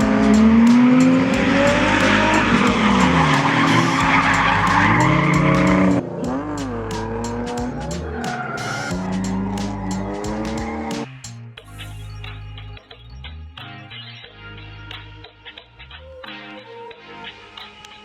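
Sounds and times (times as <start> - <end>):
tire squeal: 0.0 - 11.1
car engines revving: 0.0 - 11.2.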